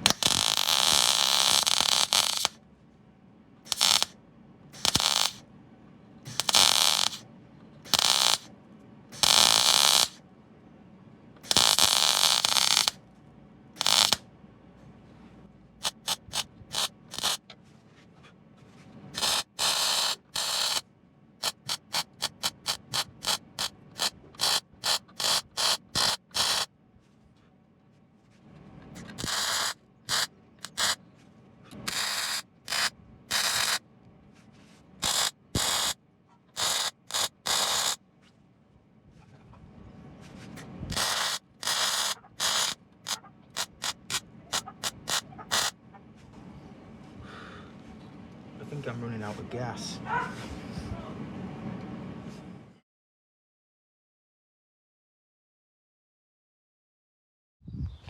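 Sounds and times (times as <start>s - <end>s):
welder crackling: 0.0s - 2.6s, 3.7s - 4.2s, 4.8s - 5.4s, 6.3s - 7.2s, 7.8s - 8.5s, 9.1s - 10.2s, 11.4s - 13.0s, 13.8s - 14.3s, 15.8s - 17.5s, 19.1s - 20.8s, 21.4s - 26.7s, 28.9s - 31.0s, 31.7s - 33.8s, 35.0s - 38.0s, 40.9s - 45.8s.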